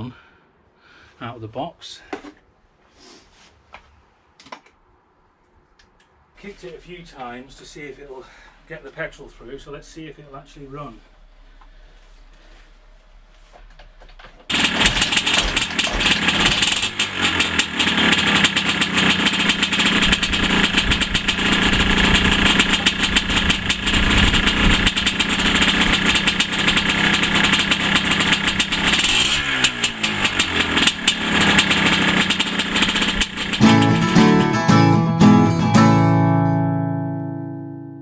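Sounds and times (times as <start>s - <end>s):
two-stroke engine running: 14.5s - 35.6s.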